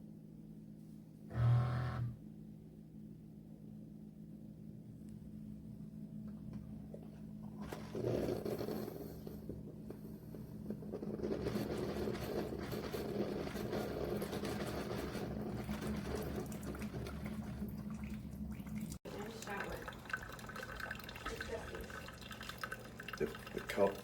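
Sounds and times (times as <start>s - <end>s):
coffee maker buzzing: 1.3s - 2.2s, 19.1s - 24.0s
hot water streaming into cup: 15.9s - 24.0s.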